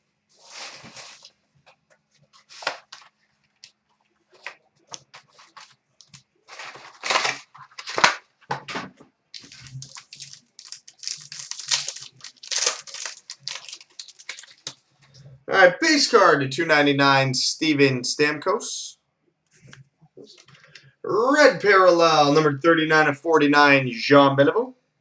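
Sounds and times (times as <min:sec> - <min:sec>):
plastic wrapping tearing and crinkling: 0:04.4 - 0:08.3, 0:09.4 - 0:14.8.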